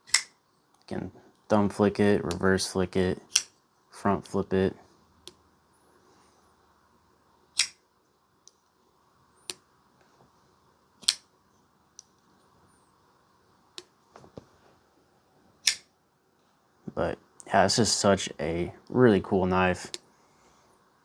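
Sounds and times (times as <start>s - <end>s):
folding knife clicking: 0.0s - 0.4s, 3.3s - 3.5s, 7.6s - 7.8s, 11.0s - 11.2s, 15.6s - 15.8s.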